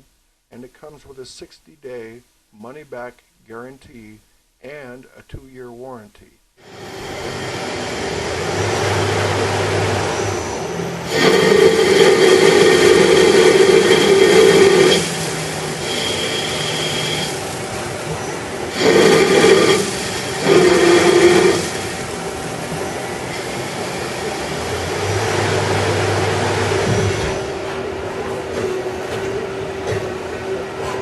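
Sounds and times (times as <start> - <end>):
lower hum: 6.6 - 27.6
loud motor whine: 6.6 - 30.6
steady machine hum: 6.6 - 31.0.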